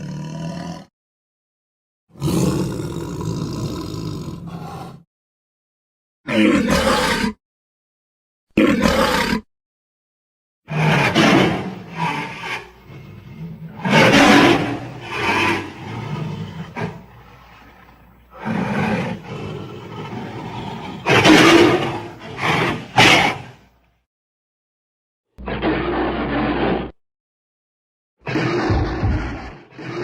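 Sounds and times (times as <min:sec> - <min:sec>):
giant ape roars and grunts: 0:00.0 - 0:00.9, 0:02.2 - 0:05.1, 0:06.3 - 0:07.4, 0:08.6 - 0:09.4, 0:10.7 - 0:23.6, 0:28.2 - 0:30.0.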